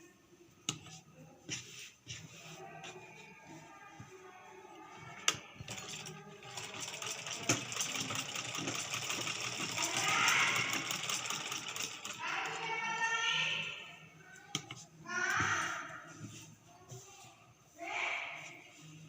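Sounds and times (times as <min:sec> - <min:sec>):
sewing machine stitching: 0:05.2 - 0:12.7.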